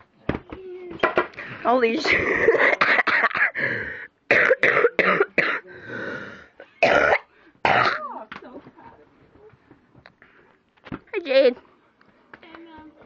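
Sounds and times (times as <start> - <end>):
person coughing: 2.0 - 3.7, 4.3 - 5.7, 6.8 - 8.2.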